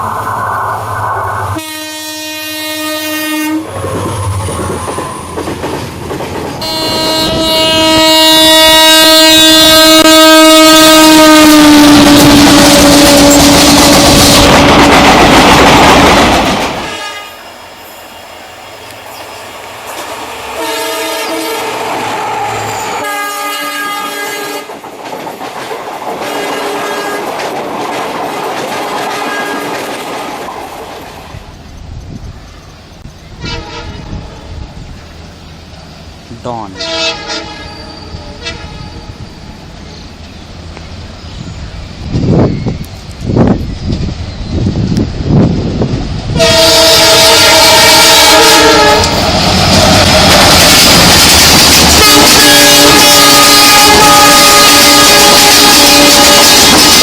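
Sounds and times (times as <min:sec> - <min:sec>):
train wheels rushing on rails: 0:00.0 - 0:57.0
locomotive horn blasts: 0:01.6 - 0:03.7, 0:06.6 - 0:14.8, 0:16.9 - 0:17.4, 0:20.6 - 0:21.8, 0:23.0 - 0:24.7, 0:33.4 - 0:34.2, 0:36.8 - 0:39.0, 0:46.4 - 0:49.2, 0:51.9 - 0:57.0.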